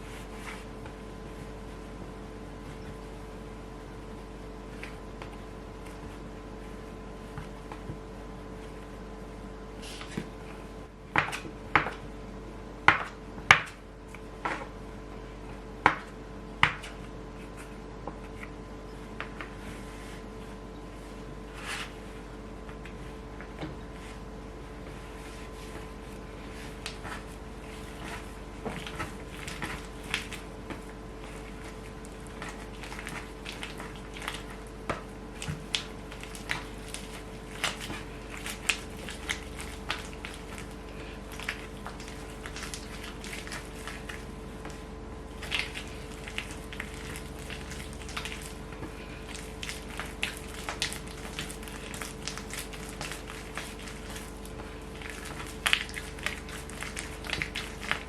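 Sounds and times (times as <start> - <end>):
steady electrical hum: 0.0 - 58.0
hands handling bread dough: 13.5 - 58.0.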